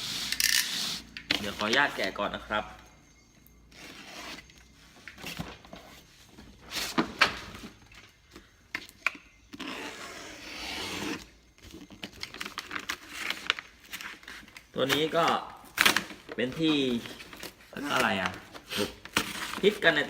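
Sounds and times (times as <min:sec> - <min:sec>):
cardboard parcel rubbing and scraping: 0:00.0 - 0:02.1, 0:03.7 - 0:04.5.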